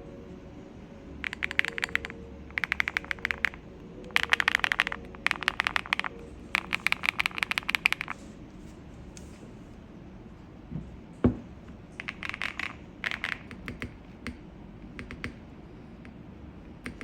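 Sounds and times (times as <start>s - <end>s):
mechanical keyboard typing: 1.2s - 8.2s, 12.0s - 15.4s, 16.7s - 17.0s.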